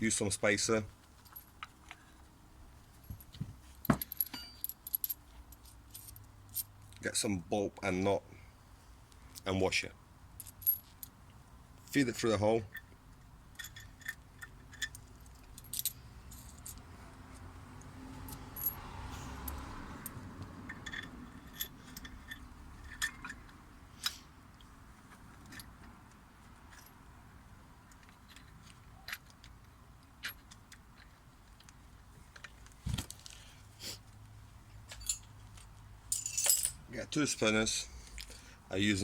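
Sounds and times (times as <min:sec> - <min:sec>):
metal bolt and nut clinking: 0:01.1 - 0:02.1, 0:02.9 - 0:07.2, 0:10.4 - 0:11.2, 0:11.8 - 0:27.1, 0:27.8 - 0:33.4, 0:34.8 - 0:38.4.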